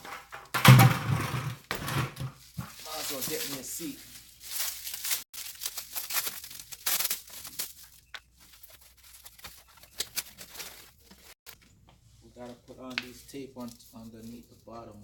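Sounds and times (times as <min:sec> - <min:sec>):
plastic wrapping crinkling and tearing: 0:02.6 - 0:11.4.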